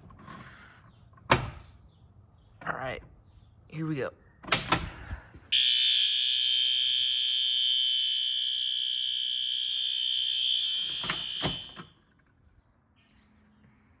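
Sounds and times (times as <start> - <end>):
fire alarm horn steady tone: 5.5 - 11.9
sharp clicks: 10.8 - 11.9.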